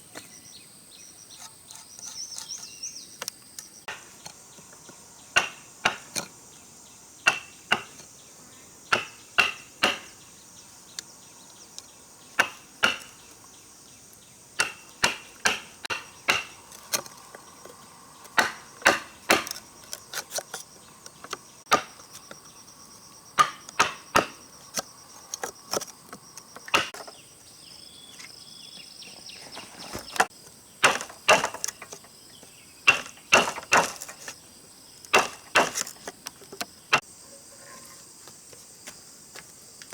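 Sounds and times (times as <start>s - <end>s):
insects chirring: 0.0s - 39.9s
hand tool striking wood: 5.4s - 6.3s, 7.2s - 8.0s, 8.9s - 10.2s, 12.4s - 13.3s, 14.6s - 17.5s, 18.3s - 22.4s, 23.4s - 27.2s, 30.0s - 32.0s, 32.9s - 34.4s, 35.1s - 36.1s.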